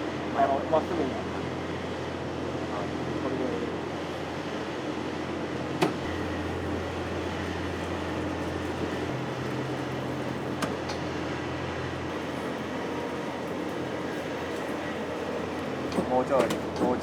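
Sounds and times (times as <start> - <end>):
metal bending machine humming: 5.1 - 17.0.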